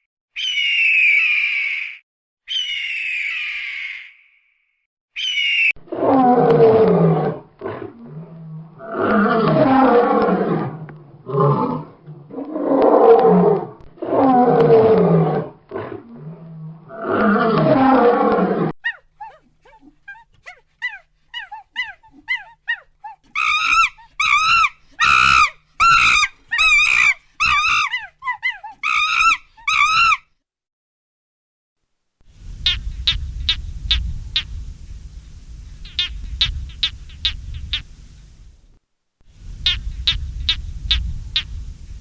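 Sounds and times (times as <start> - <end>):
animal chirping: 18.8 - 30.2, 32.4 - 38.6, 39.4 - 42.0
animal quavering calls: 18.8 - 30.2, 32.4 - 38.6, 39.4 - 42.0.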